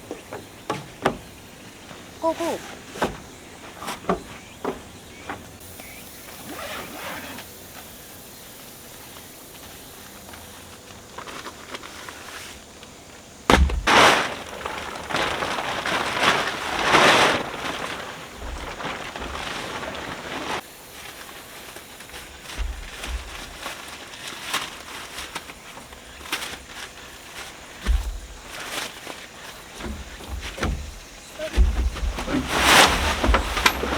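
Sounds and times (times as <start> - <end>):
tent frame springing open: 0.0 - 7.9, 13.4 - 33.9
nylon fabric rustling: 0.0 - 33.9.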